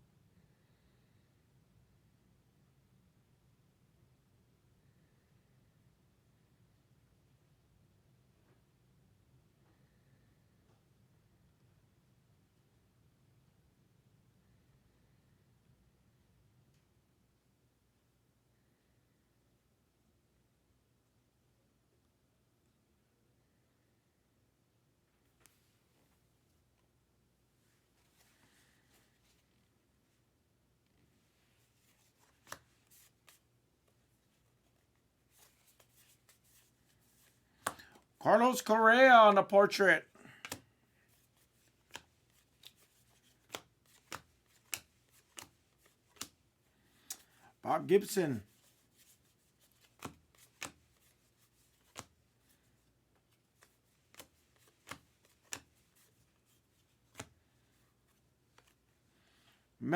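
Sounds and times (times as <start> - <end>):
trading cards tapping and sliding: 31.6 - 38.8, 40.3 - 47.4, 48.5 - 58.9.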